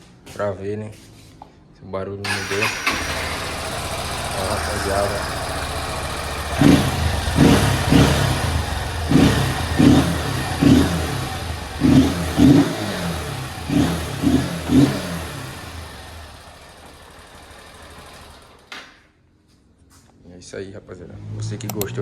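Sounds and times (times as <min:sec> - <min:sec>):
motorcycle engine revving: 0:02.3 - 0:18.7.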